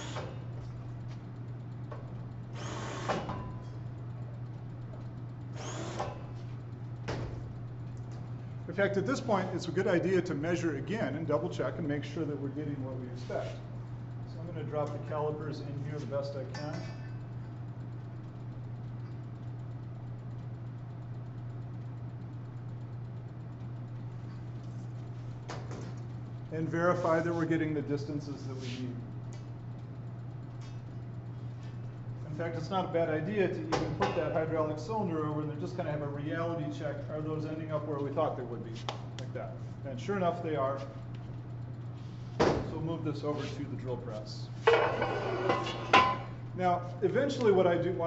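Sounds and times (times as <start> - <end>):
drill press running: 0.0 - 38.6, 44.0 - 46.6
steady low hum: 0.0 - 48.0.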